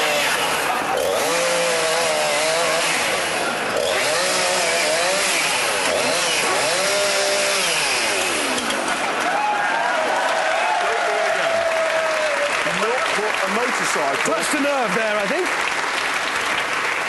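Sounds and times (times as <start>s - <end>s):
chainsaw cutting: 0.0s - 9.4s.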